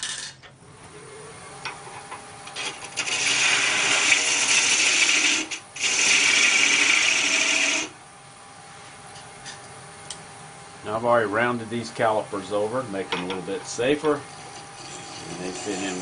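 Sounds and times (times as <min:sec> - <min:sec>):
lathe tool cutting spinning wood: 0:02.5 - 0:08.0, 0:13.8 - 0:16.0.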